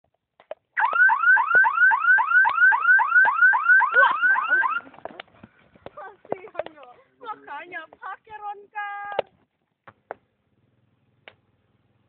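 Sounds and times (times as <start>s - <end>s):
car alarm rising chirps: 0.8s - 4.9s.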